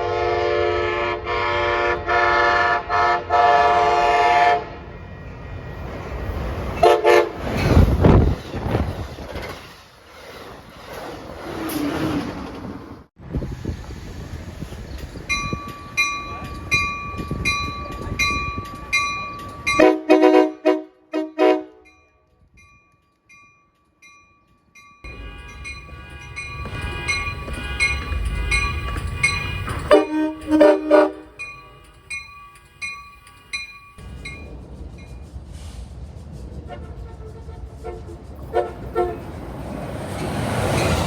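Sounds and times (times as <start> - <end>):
train horn blasts: 0.0 - 4.8, 6.8 - 7.6, 19.7 - 22.0, 25.1 - 31.4, 36.6 - 39.4
low train rumble: 0.0 - 41.0
bell dinging: 21.9 - 30.3.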